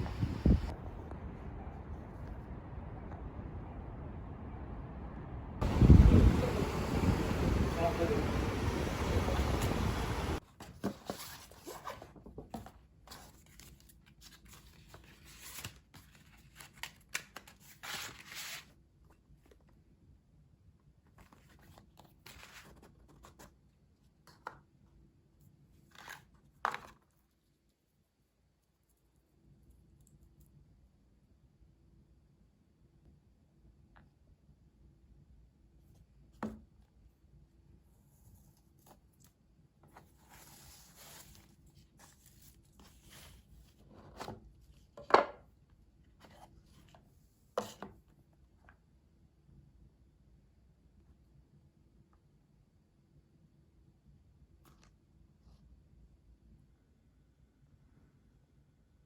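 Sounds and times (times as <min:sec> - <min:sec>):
soft rustle: 0:37.9 - 0:45.0.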